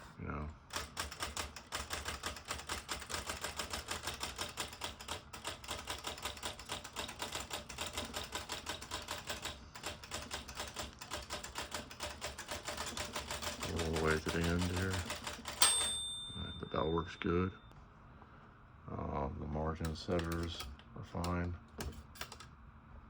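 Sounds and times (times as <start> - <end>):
manual typewriter typing: 0.7 - 16.0, 19.8 - 22.5
typewriter carriage stepping: 0.7 - 16.1.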